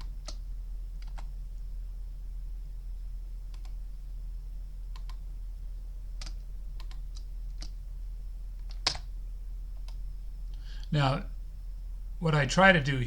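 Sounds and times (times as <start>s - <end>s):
keyboard and mouse clicks: 0.0s - 0.4s, 1.0s - 1.3s, 3.5s - 3.8s, 4.9s - 5.2s, 6.2s - 7.8s, 8.6s - 9.1s
low electrical hum: 0.0s - 13.0s.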